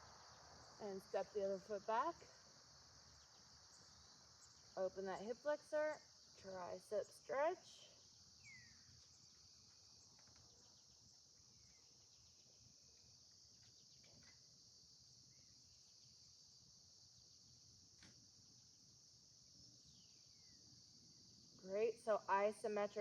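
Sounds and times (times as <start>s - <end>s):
soft bird chirps: 8.0s - 14.6s.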